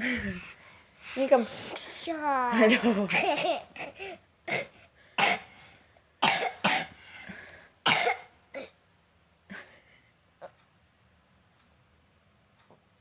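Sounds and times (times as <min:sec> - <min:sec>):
child coughing: 0:02.5 - 0:05.5, 0:06.2 - 0:07.0, 0:07.9 - 0:08.8.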